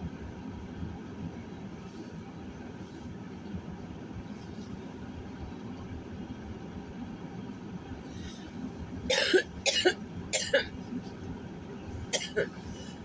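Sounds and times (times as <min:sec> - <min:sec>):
person coughing: 0:09.1 - 0:10.8, 0:12.1 - 0:13.0.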